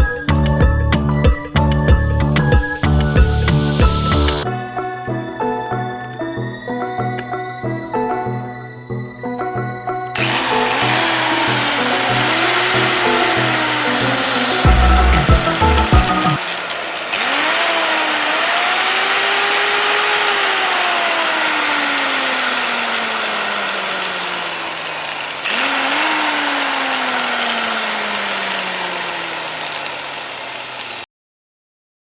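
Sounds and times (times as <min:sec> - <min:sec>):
angle grinder motor winding up: 0:10.2 - 0:31.1.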